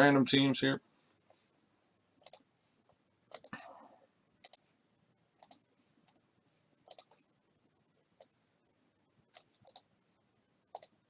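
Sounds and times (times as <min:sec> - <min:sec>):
computer mouse clicks: 0:02.2 - 0:02.5, 0:03.3 - 0:03.6, 0:04.4 - 0:04.7, 0:05.4 - 0:06.2, 0:06.9 - 0:07.3, 0:08.2 - 0:08.4, 0:09.3 - 0:09.9, 0:10.7 - 0:11.0.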